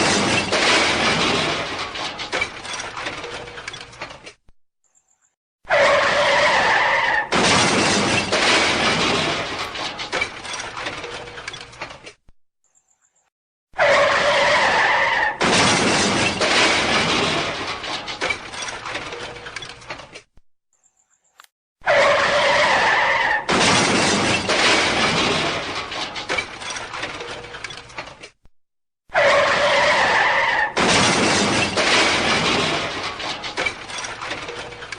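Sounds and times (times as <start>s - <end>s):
car crash impact with debris: 0.0s - 3.8s, 7.3s - 11.4s, 15.4s - 19.5s, 23.4s - 27.4s, 30.7s - 34.9s
glass breaking: 0.0s - 4.3s, 7.3s - 12.0s, 15.4s - 20.2s, 23.5s - 28.3s, 30.8s - 34.9s.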